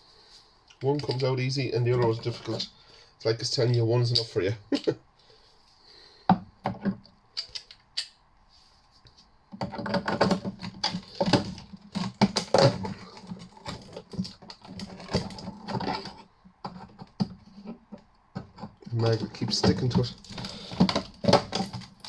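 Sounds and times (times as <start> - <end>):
small metal parts clicking and scraping: 0.7 - 2.8, 7.4 - 8.2, 9.7 - 17.8, 18.4 - 22.0.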